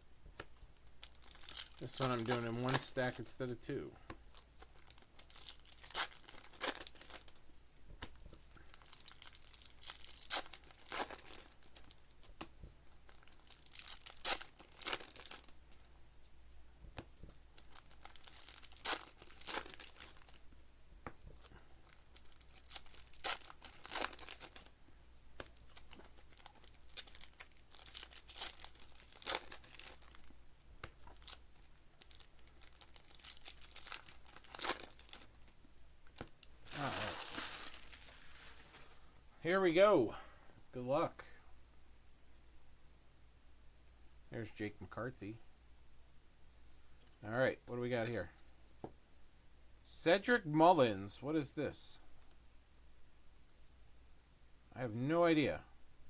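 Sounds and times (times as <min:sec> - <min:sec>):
foil wrappers tearing and crinkling: 0:01.0 - 0:03.4, 0:04.3 - 0:07.4, 0:08.5 - 0:12.3, 0:13.1 - 0:15.6, 0:17.6 - 0:20.4, 0:21.8 - 0:24.7, 0:25.4 - 0:30.3, 0:30.9 - 0:35.4, 0:36.6 - 0:39.0.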